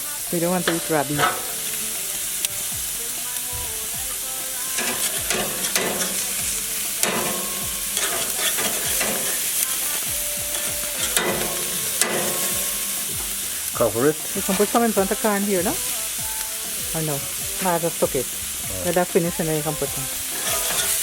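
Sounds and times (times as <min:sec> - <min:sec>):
meat sizzling on a grill: 0:00.0 - 0:21.0
clicks and scrapes on a grill: 0:04.7 - 0:13.6, 0:20.3 - 0:21.0.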